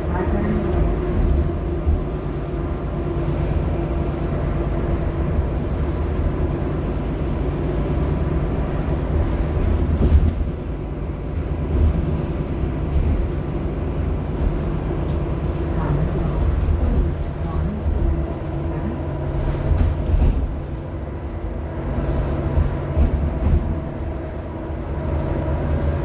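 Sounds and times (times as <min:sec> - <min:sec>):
bus engine rumble: 0:00.0 - 0:26.0.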